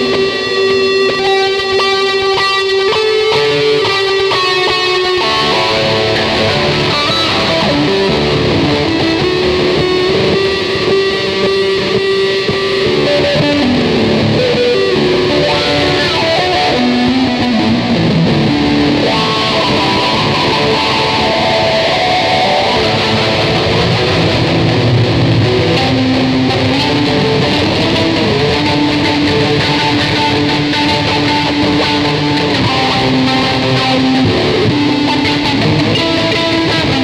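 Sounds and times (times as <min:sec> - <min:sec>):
electric guitar melody: 0:00.0 - 0:37.0.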